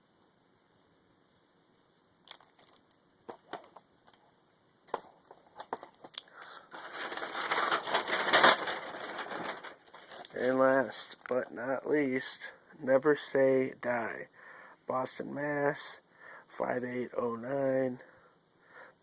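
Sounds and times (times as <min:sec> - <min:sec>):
plastic packaging crinkling: 0:02.2 - 0:04.2, 0:04.9 - 0:11.4.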